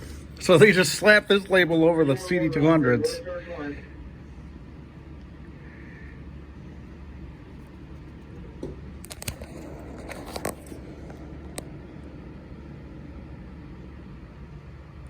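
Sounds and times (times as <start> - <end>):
steady low hum: 0.0 - 15.0
clicks and rustles of handling: 9.0 - 11.7.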